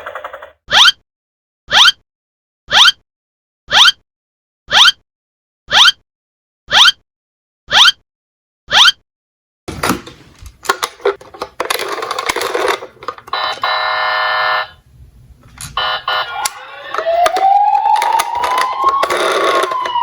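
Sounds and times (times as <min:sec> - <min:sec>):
siren wail rising in pitch: 0:00.7 - 0:01.0, 0:01.7 - 0:02.0, 0:02.7 - 0:03.0, 0:03.7 - 0:04.0, 0:04.7 - 0:05.0, 0:05.7 - 0:06.0, 0:06.7 - 0:07.0, 0:07.7 - 0:08.0, 0:15.8 - 0:20.0
electronic alarm buzz: 0:01.7 - 0:02.0, 0:02.7 - 0:03.0, 0:03.7 - 0:04.0, 0:04.7 - 0:05.0, 0:05.7 - 0:06.0, 0:06.7 - 0:07.0, 0:07.7 - 0:08.0, 0:13.4 - 0:14.8, 0:15.8 - 0:20.0
toy cars clicking and clattering: 0:10.7 - 0:13.5, 0:16.9 - 0:20.0.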